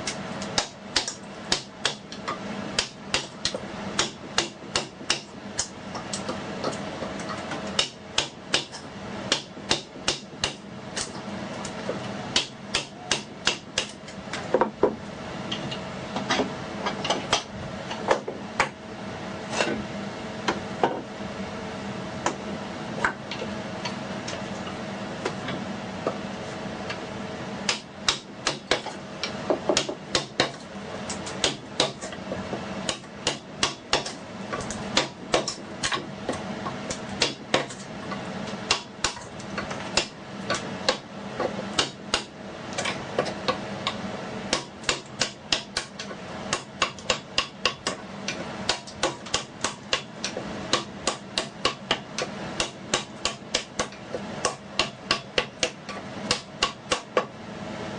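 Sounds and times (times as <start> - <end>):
hammer striking chisel into wood: 0.6 - 2.0, 2.8 - 5.3, 7.8 - 10.6, 12.4 - 15.0, 27.7 - 28.9, 29.5 - 30.6, 31.4 - 32.1, 32.9 - 34.2, 35.0 - 36.0, 37.2 - 37.8, 40.0 - 41.0, 41.8 - 42.3, 44.5 - 48.0, 48.7 - 52.0, 52.6 - 57.3.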